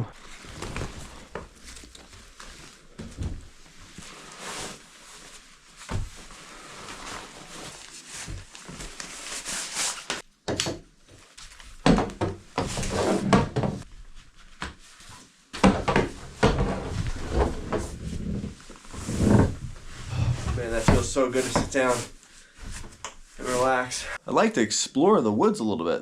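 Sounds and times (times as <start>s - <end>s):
rustling: 0.2s - 10.2s
breathy vocal sounds: 20.0s - 20.7s.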